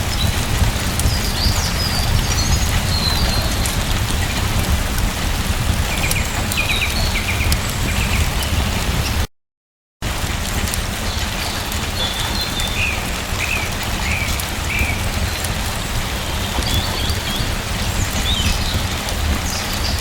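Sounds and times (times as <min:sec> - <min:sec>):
low rumble: 0:00.0 - 0:09.2
steady rain: 0:00.0 - 0:09.3, 0:10.0 - 0:20.0.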